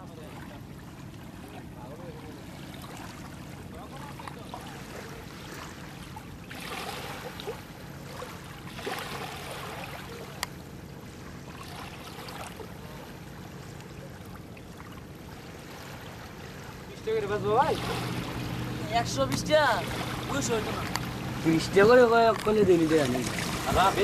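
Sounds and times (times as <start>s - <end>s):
river water lapping around boat: 0.0s - 24.0s.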